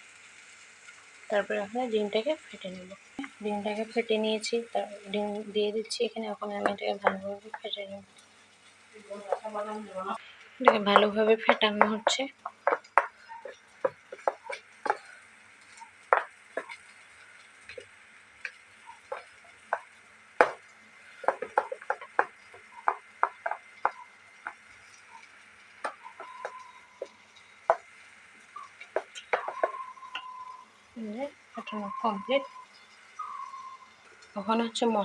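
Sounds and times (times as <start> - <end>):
paste beaten in a bowl: 10.7 - 15.1, 21.2 - 24.7.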